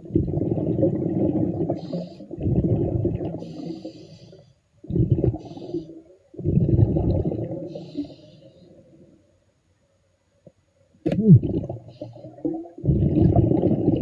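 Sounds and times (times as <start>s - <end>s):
underwater air bubbling: 0.0s - 9.0s, 11.1s - 14.0s
breath hissing through diving gear: 1.7s - 2.3s, 3.4s - 4.5s, 7.7s - 8.8s.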